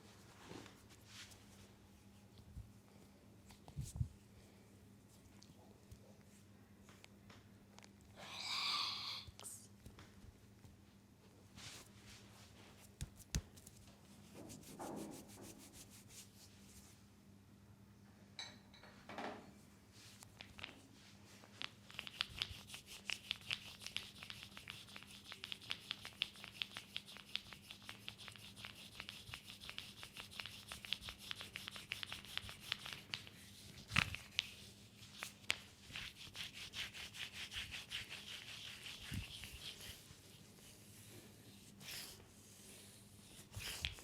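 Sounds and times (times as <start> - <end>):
hands rubbing oiled skin: 11.6 - 16.9, 20.3 - 44.0.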